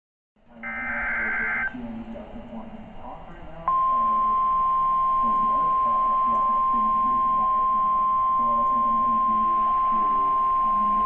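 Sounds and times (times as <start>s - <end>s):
steady single-pitch alarm tone: 0.6s - 1.7s, 3.7s - 11.0s.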